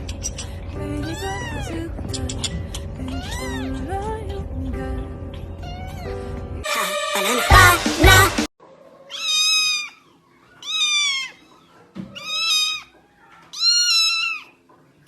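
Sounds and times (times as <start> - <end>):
cat meowing: 1.0 - 1.8, 3.0 - 3.8, 5.6 - 6.2, 9.1 - 10.0, 10.6 - 11.5, 12.1 - 14.6.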